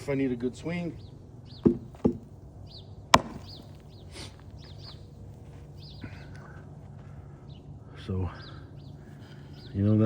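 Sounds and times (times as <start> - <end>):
axe chopping wood: 3.1 - 3.8.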